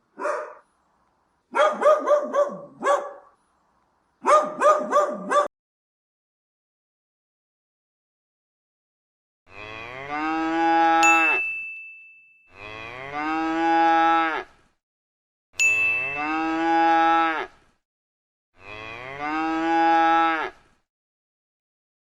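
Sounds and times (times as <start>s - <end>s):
cow mooing: 9.5s - 11.2s, 12.5s - 14.6s, 16.2s - 17.6s, 18.6s - 20.7s
bell-like ding: 11.0s - 12.5s, 15.6s - 16.4s.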